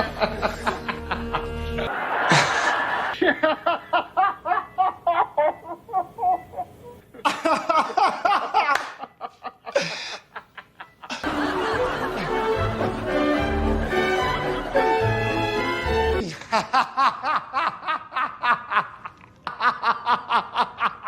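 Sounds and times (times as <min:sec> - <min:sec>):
music: 0:00.0 - 0:01.9, 0:11.2 - 0:16.2
person laughing: 0:00.0 - 0:12.9, 0:16.2 - 0:21.0.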